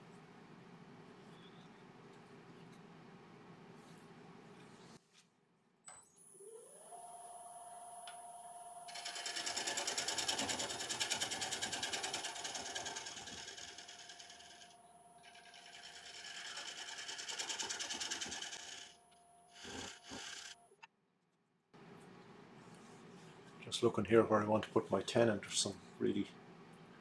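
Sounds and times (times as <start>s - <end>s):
wood lathe motor whine: 6.4s - 20.6s.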